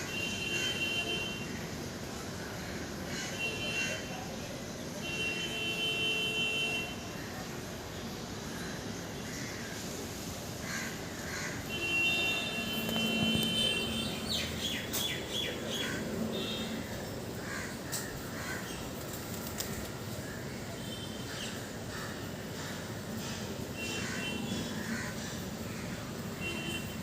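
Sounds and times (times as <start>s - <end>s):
steady background noise: 0.0s - 27.0s
birds calling: 10.6s - 27.0s.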